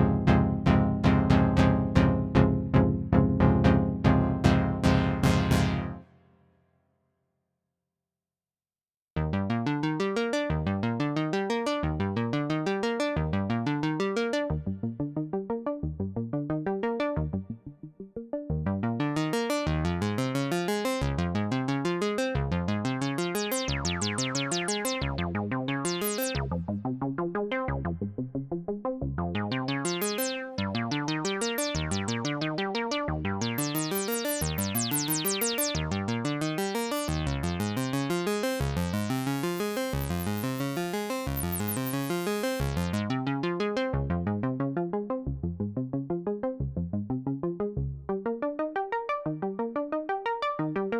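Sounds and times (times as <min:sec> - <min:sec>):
synthesizer bass and chord notes: 0:00.0 - 0:06.0, 0:09.2 - 0:17.5, 0:18.5 - 0:28.3, 0:29.1 - 0:44.7.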